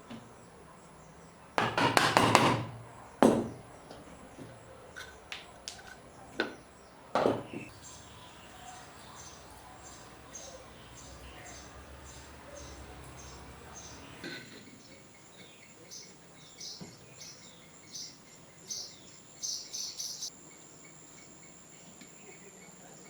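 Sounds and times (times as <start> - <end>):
hand tool knocking on wood: 1.6 - 6.6, 7.2 - 7.8
insect chirping: 2.7 - 14.2, 16.0 - 22.9.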